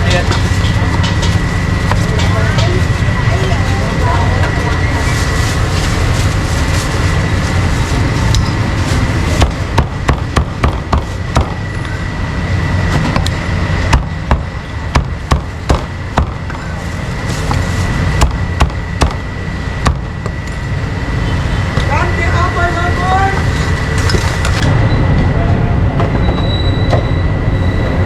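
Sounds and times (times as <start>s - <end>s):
street traffic hum: 0.0s - 28.0s
cleaver chopping meat: 9.4s - 11.6s, 13.9s - 16.4s, 18.2s - 19.2s.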